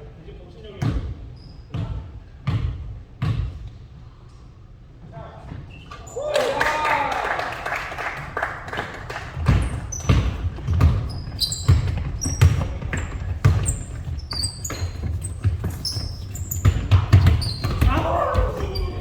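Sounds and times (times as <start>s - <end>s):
sneaker squeaks: 0.7s - 3.7s, 5.2s - 6.3s, 9.4s - 19.0s
basketballs bouncing on wooden floor: 0.8s - 3.8s, 9.2s - 19.0s.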